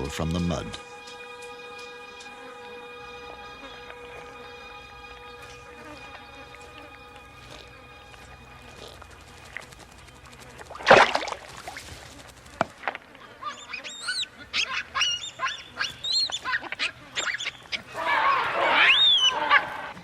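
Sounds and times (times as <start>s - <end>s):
baboons shrieking: 13.2s - 20.0s.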